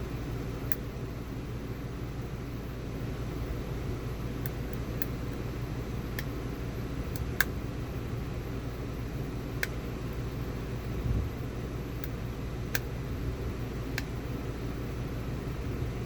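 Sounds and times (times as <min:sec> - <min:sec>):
low fan hum: 0:00.0 - 0:16.0
lock pick clicks: 0:04.4 - 0:05.2.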